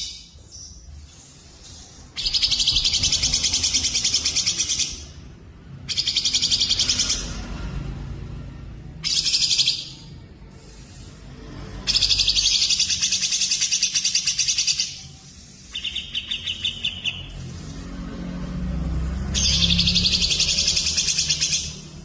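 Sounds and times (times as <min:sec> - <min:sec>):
songbird trilling: 0:02.1 - 0:05.2, 0:05.9 - 0:07.3, 0:15.7 - 0:17.4.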